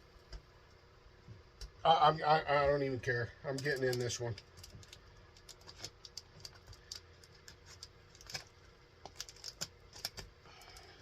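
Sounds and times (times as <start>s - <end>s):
cardboard tearing and crackling: 3.8s - 10.3s.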